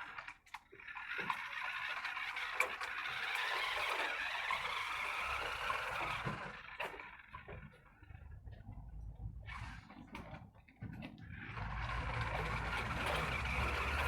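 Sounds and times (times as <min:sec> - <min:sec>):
remote control car whirring: 0:00.0 - 0:07.7, 0:11.4 - 0:14.0.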